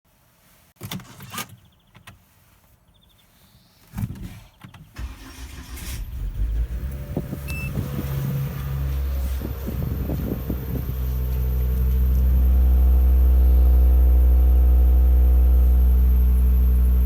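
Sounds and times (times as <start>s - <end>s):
car engine fast idle: 5.0s - 17.0s.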